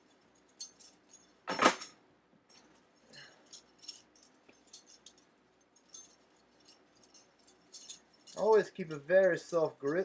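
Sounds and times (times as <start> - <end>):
metal clatter: 0.6 - 2.0
butterfly knife jingling and clinking: 2.5 - 10.0.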